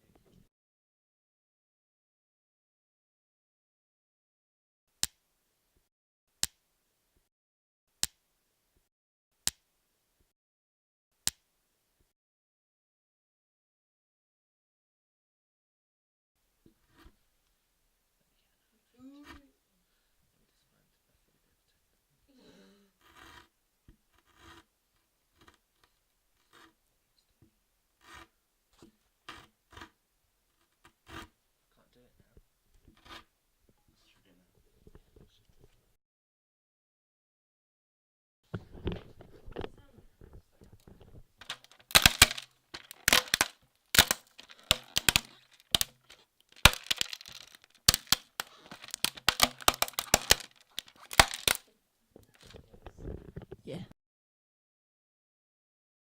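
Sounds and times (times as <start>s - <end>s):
brittle cracking and snapping: 41.4s - 51.7s.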